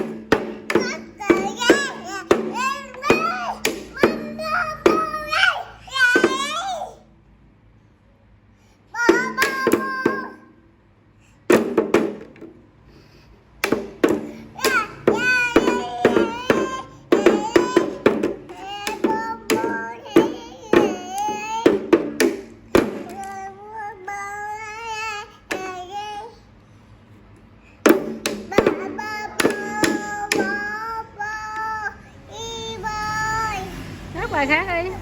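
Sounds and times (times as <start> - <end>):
drum knocks: 0.0 - 5.4, 6.0 - 6.6, 9.0 - 10.4, 11.5 - 12.6, 13.6 - 23.5, 27.8 - 30.8
child singing in high voice: 0.0 - 7.1, 8.9 - 10.6, 14.0 - 26.5, 28.2 - 34.2.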